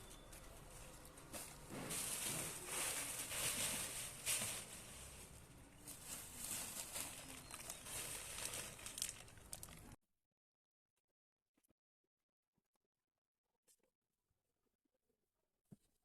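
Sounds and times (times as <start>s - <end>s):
plastic waste rustling and crinkling: 0.0s - 10.0s.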